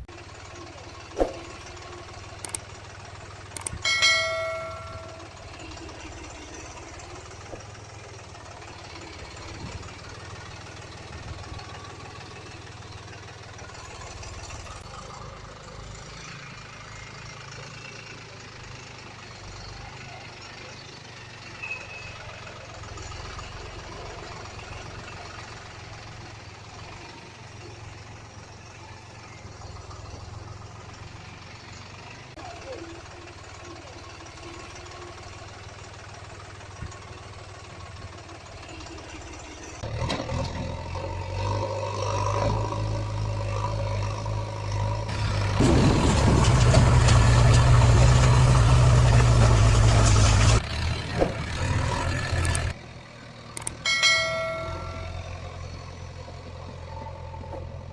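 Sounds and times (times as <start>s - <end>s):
diesel engine running: 0.0s - 57.9s
ringing metallic clang: 3.8s - 5.5s, 53.8s - 55.6s.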